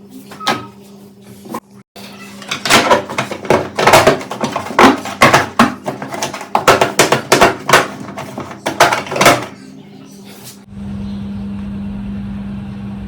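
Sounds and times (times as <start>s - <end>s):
low hum: 10.7s - 13.0s.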